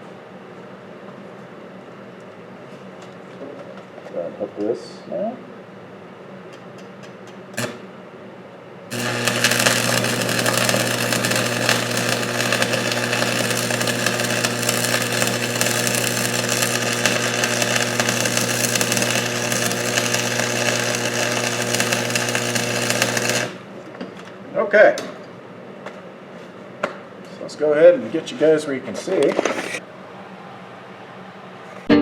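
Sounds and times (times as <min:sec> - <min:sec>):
welding arc crackling sizzle: 0:07.6 - 0:07.9, 0:08.9 - 0:23.8, 0:29.5 - 0:29.8.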